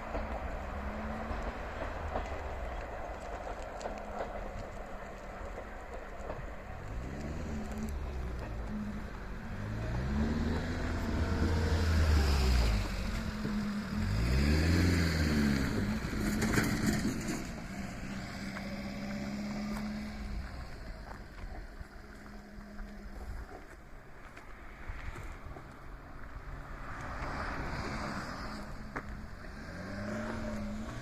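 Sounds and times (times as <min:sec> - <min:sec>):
vehicle engines passing: 0:00.0 - 0:31.0
sharp clatter: 0:15.7 - 0:18.0.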